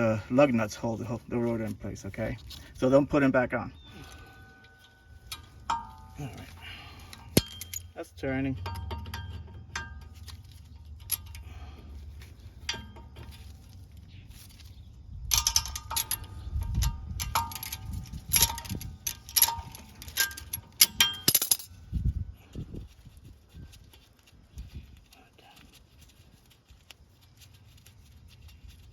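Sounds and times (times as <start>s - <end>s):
hand tools clanking on metal: 3.9s - 14.7s, 15.3s - 21.8s.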